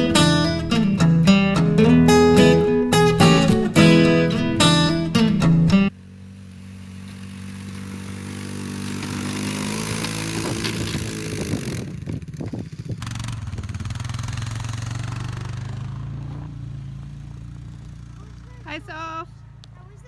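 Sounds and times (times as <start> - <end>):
vehicle engine running: 0.0 - 20.0.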